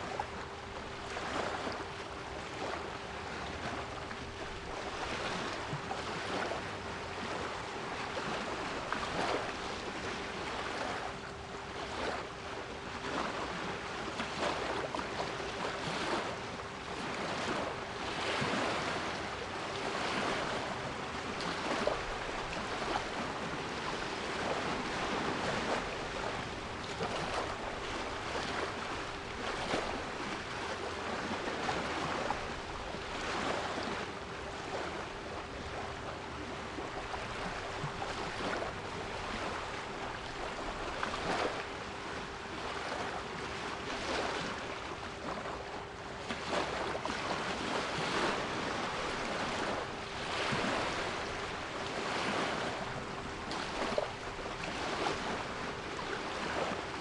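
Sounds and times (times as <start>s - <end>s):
sea waves washing: 13.0s - 45.6s, 46.3s - 57.0s.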